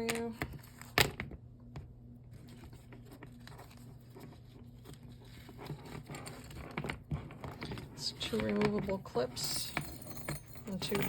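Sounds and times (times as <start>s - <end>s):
fabric strap rustling and scratching: 2.3s - 8.6s.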